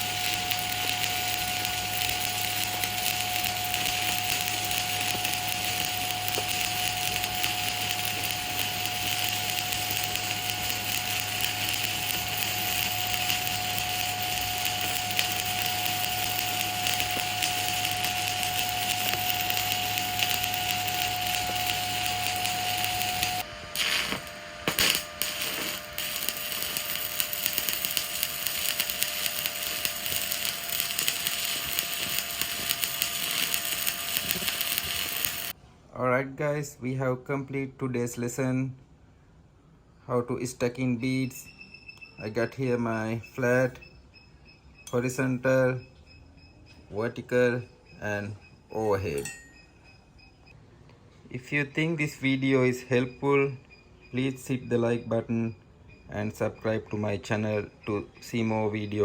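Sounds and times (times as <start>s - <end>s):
welding arc crackling and hissing: 0.0s - 35.6s
steady hum and whine: 0.0s - 35.9s.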